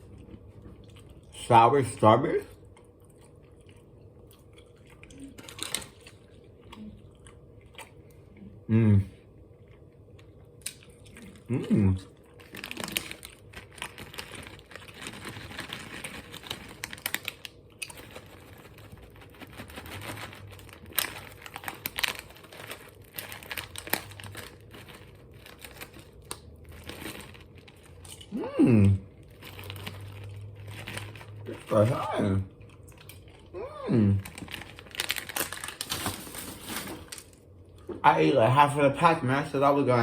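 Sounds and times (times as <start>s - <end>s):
plastic candy pack crinkling: 5.0s - 7.3s, 12.1s - 28.3s, 29.1s - 40.0s
person humming mm: 8.7s - 9.1s, 11.5s - 12.0s, 28.3s - 29.1s, 33.6s - 34.2s.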